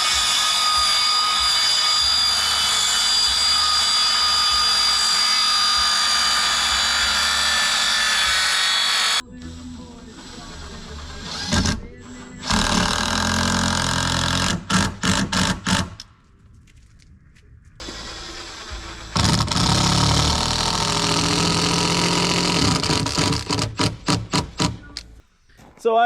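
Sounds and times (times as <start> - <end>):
cordless driver sinking screws: 19.2 - 24.9.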